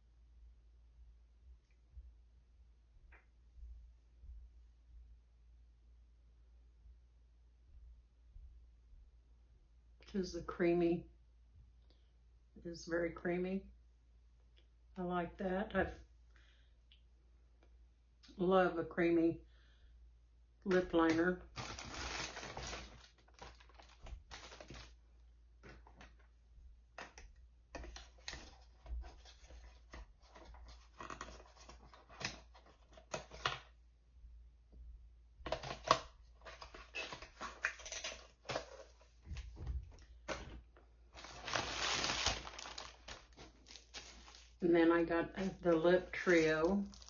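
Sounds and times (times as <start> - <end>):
packaging rustling: 21.4 - 25.0, 35.5 - 39.5, 40.2 - 44.6, 45.5 - 47.0
clicks and taps of packaging: 27.0 - 28.6, 35.4 - 39.5.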